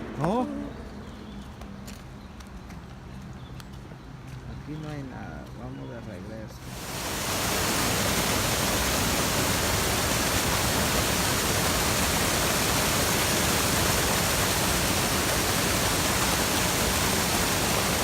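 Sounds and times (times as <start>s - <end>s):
creek water rushing: 6.6s - 18.0s.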